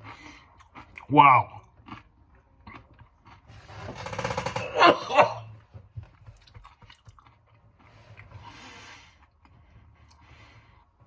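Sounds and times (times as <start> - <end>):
chewing crunchy chips: 0.0 - 3.7, 6.2 - 8.6.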